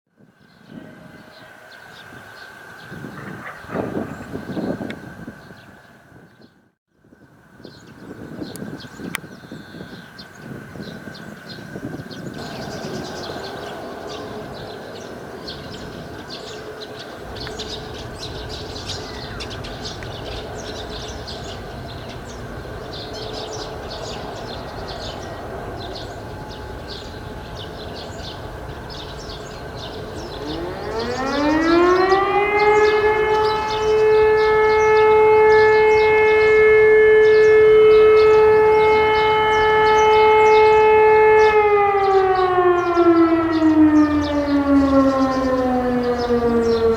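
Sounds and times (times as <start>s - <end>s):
birds chirping: 0.4s - 46.9s
electric motor siren: 17.2s - 46.9s.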